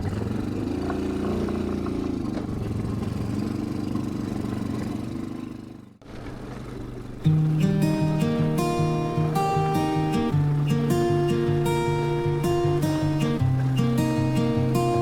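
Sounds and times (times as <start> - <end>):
quad bike engine running: 0.0 - 9.4.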